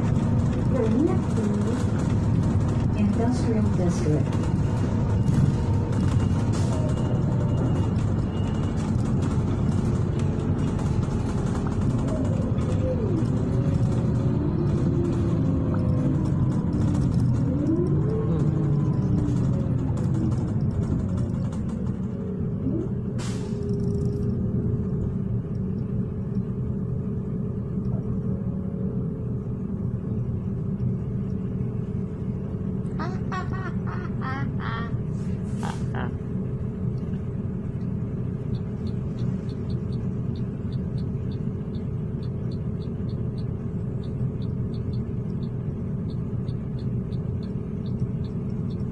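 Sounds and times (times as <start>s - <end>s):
bus engine and road rumble: 0.0s - 48.9s
faint whine: 14.7s - 48.9s.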